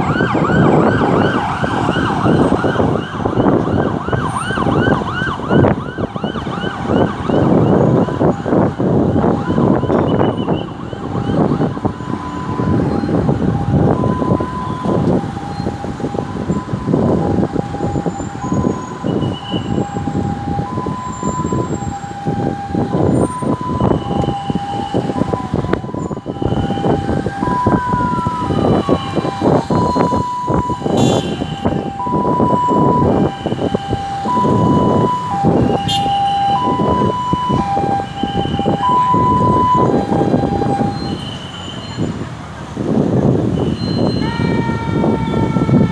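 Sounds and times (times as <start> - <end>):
siren wail rising and falling: 0.0 - 41.6, 42.5 - 45.9
ambulance siren two-tone: 0.0 - 45.9
road traffic noise: 0.0 - 45.9.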